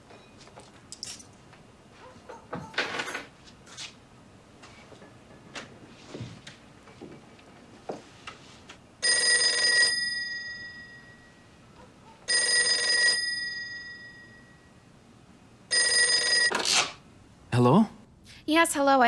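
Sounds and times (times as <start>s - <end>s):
telephone ringing: 9.0s - 11.4s, 12.3s - 14.7s, 15.7s - 16.7s.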